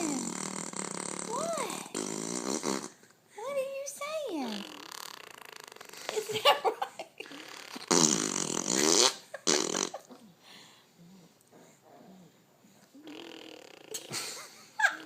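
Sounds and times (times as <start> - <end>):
child blowing raspberries: 0.0 - 3.0, 4.6 - 6.2, 7.3 - 10.0.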